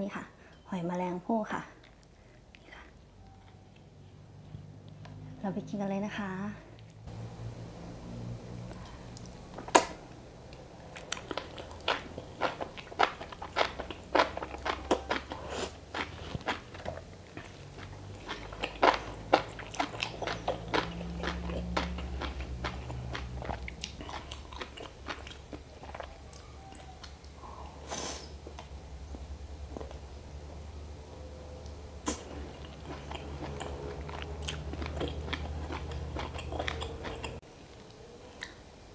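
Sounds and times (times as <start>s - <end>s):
crisp bites and chewing crunches: 32.1s - 37.4s.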